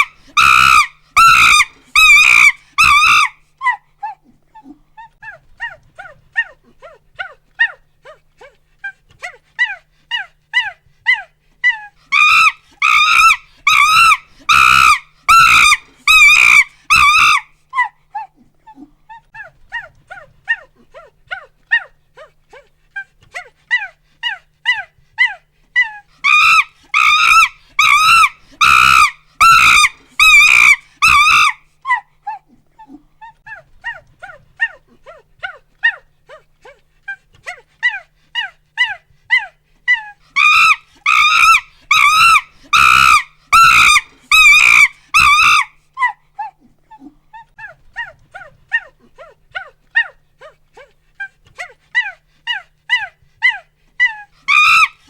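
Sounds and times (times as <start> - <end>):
chimpanzee hooting and screaming: 0.0 - 4.3, 9.2 - 18.4, 23.4 - 32.5, 37.5 - 50.9, 51.6 - 55.0.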